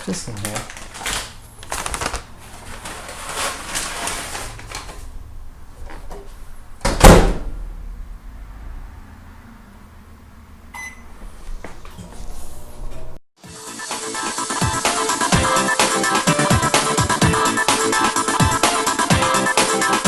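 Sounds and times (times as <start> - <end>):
microwave humming: 10.6 - 13.2
short beep: 10.7 - 11.1.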